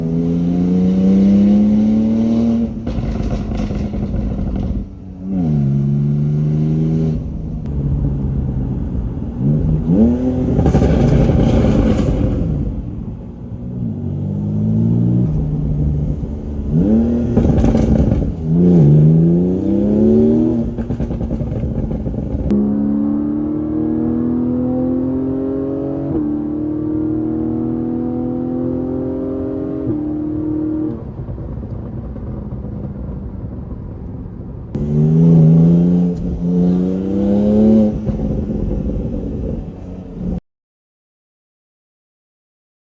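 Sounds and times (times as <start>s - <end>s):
car engine accelerating: 0.0s - 40.4s
exhaust pops and crackles: 2.8s - 4.9s, 9.7s - 12.8s, 15.3s - 22.6s.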